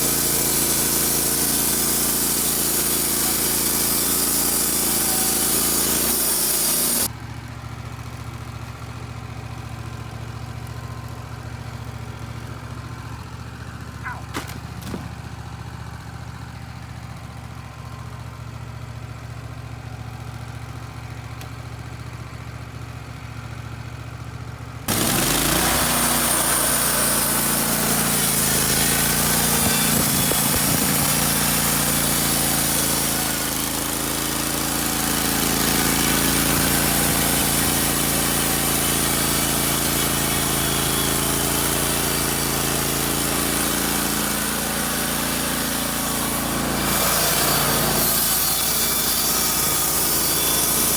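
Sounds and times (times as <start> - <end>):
band blade sawing through log: 0.0 - 7.1, 24.9 - 50.9
sawmill engine running: 0.0 - 50.9.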